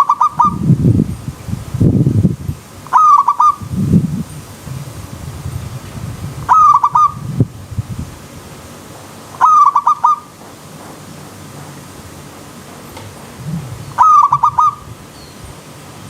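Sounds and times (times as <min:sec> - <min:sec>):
dove cooing: 0:00.0 - 0:00.6, 0:02.9 - 0:03.6, 0:06.5 - 0:07.2, 0:09.4 - 0:10.3, 0:13.4 - 0:14.9.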